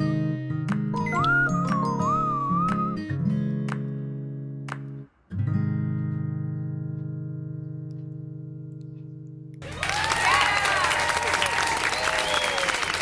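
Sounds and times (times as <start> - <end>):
acoustic guitar strumming: 0.0 - 9.6
applause: 9.6 - 13.0.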